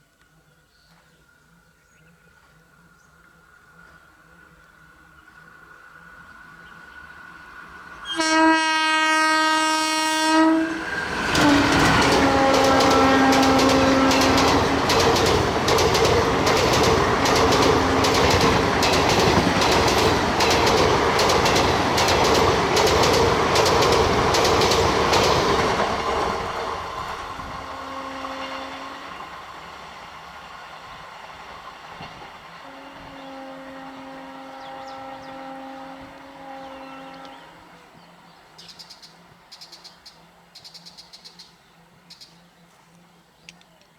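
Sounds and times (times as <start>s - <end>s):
train horn: 8.0s - 15.2s, 16.4s - 19.6s, 27.4s - 29.5s, 32.6s - 38.0s
train wheels clattering over rails: 11.0s - 27.3s.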